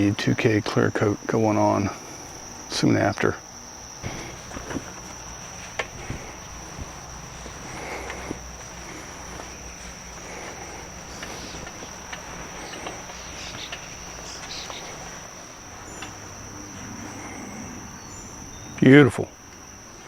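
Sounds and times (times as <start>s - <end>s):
high-pitched insect trill: 0.0s - 20.0s
faint rubbing: 3.5s - 18.5s
small knocks: 4.0s - 16.4s.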